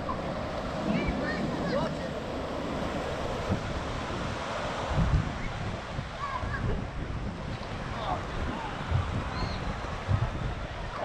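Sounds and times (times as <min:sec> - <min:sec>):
faint distant voices: 0:00.0 - 0:03.7
ocean surf breaking: 0:00.0 - 0:11.0
wind buffeting microphone: 0:00.0 - 0:11.0.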